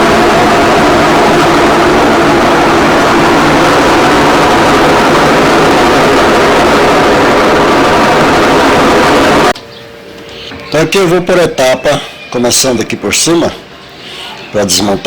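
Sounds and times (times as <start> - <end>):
washing machine spinning roughly: 0.0 - 9.6.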